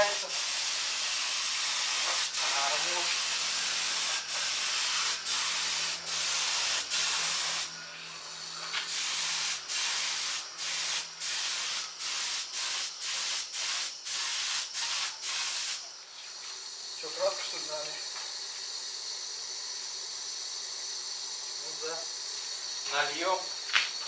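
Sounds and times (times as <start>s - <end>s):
spray gun hissing: 0.0s - 23.8s.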